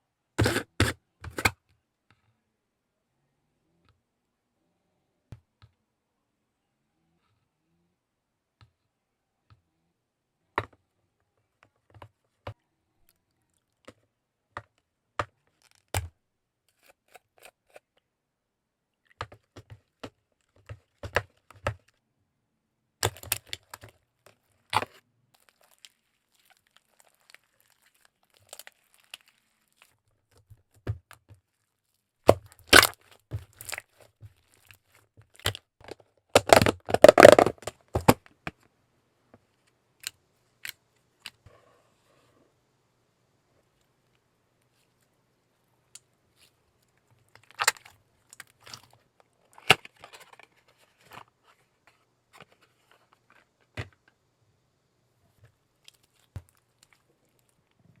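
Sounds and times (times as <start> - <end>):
plastic packaging clicks and crinkles: 14.6 - 17.9, 23.0 - 31.7, 32.3 - 38.7, 46.8 - 51.4.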